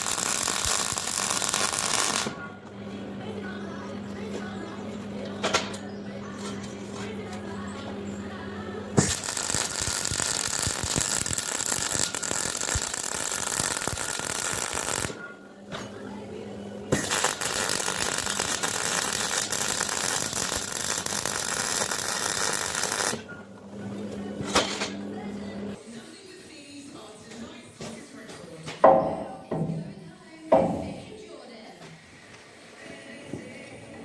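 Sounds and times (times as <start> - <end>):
welder arcing and crackling: 0.0 - 2.4, 9.0 - 15.2, 16.9 - 23.2.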